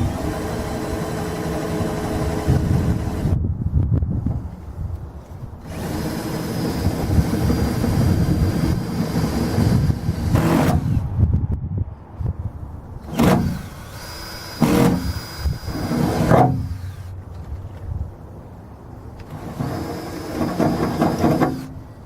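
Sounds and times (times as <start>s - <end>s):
power drill drilling through steel: 0.0s - 3.4s, 5.6s - 11.0s, 13.0s - 17.1s.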